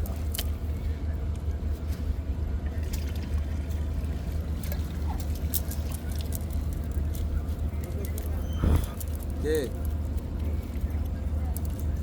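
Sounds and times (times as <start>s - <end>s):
water trickling and dripping: 2.6s - 8.4s
low rumble: 6.5s - 12.0s.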